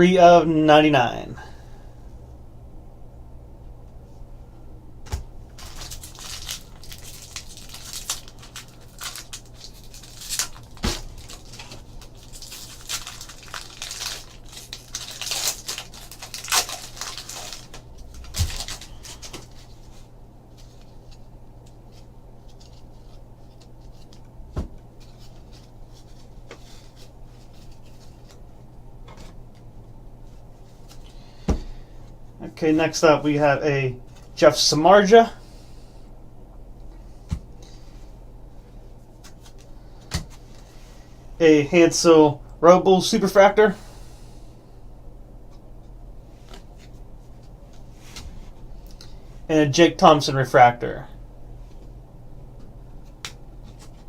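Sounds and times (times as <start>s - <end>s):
low hum: 1.0s - 42.8s
wrapper tearing and crinkling: 5.6s - 19.6s.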